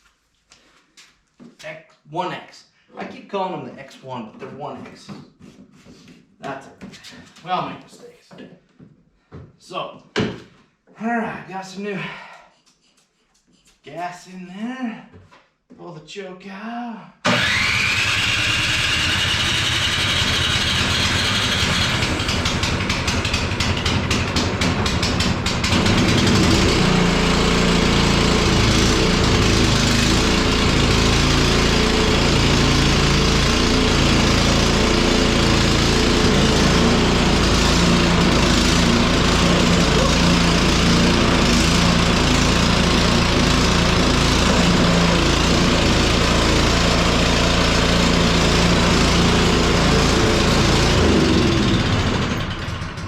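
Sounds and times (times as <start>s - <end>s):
electric starter cranking: 17.2s - 53.0s
snow blower engine running: 17.2s - 53.0s.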